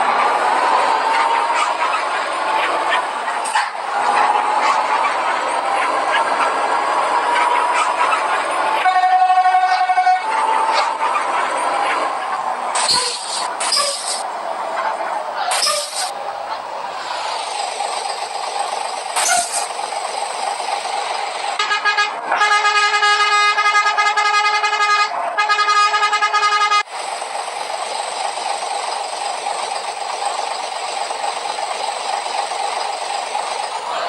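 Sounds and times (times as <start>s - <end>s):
traffic noise: 0.0s - 34.0s
bus horn blasts: 8.7s - 11.1s, 21.6s - 26.9s.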